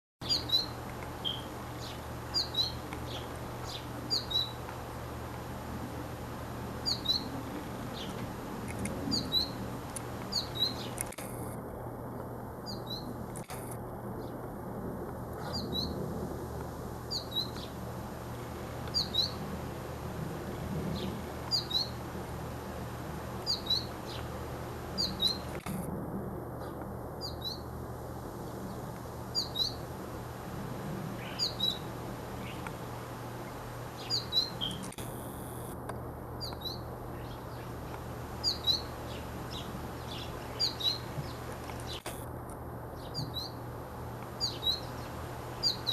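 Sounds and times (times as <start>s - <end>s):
sparrow chirping: 0.2s - 4.6s, 6.8s - 7.3s, 7.9s - 8.2s, 9.1s - 9.7s, 10.3s - 11.1s, 12.6s - 13.1s, 15.4s - 16.0s, 17.1s - 17.8s, 18.8s - 19.4s, 20.9s - 22.0s, 23.4s - 24.3s, 25.0s - 25.6s, 27.2s - 27.7s, 28.7s - 29.8s, 31.2s - 32.7s, 33.5s - 34.9s, 36.4s - 42.0s, 43.0s - 43.6s, 44.4s - 45.9s
background hiss and hum: 0.2s - 45.9s.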